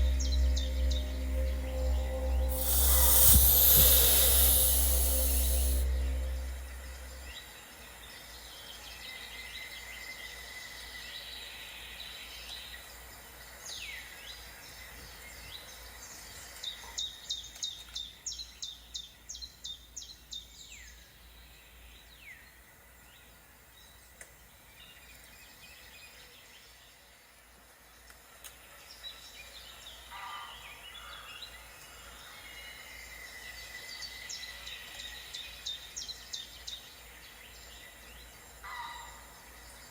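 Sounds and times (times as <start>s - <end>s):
rapid sharp high bird notes: 0.0s - 7.3s.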